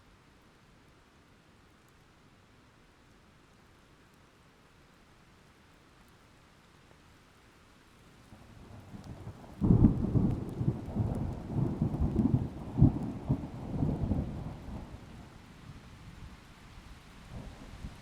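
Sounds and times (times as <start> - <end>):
rolling thunder: 9.6 - 15.0.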